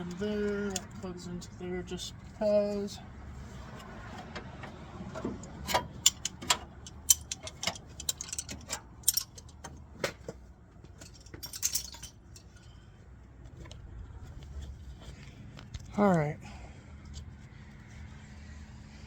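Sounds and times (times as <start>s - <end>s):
metallic clinks of tools: 5.7s - 9.6s, 11.0s - 12.8s.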